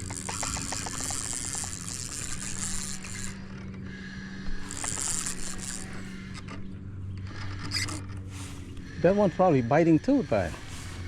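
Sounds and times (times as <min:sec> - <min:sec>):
fishing reel whirring and clicking: 0:00.0 - 0:08.3.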